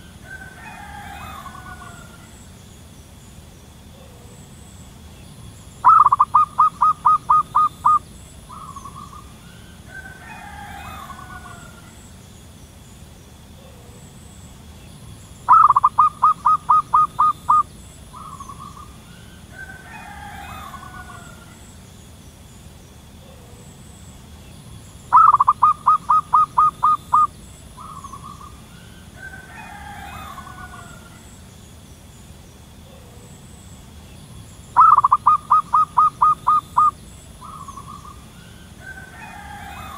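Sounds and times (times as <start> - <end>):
warbled bird calls: 0.0 - 39.9
dove cooing: 5.8 - 12.0, 15.5 - 21.7, 25.1 - 31.3, 34.8 - 39.9.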